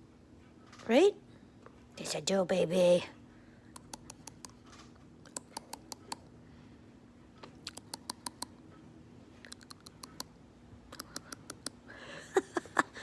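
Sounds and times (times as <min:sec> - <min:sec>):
faint steady hum: 0:00.0 - 0:13.0
sharp clicks: 0:03.7 - 0:06.3, 0:07.6 - 0:08.6, 0:09.5 - 0:10.3, 0:10.9 - 0:11.8.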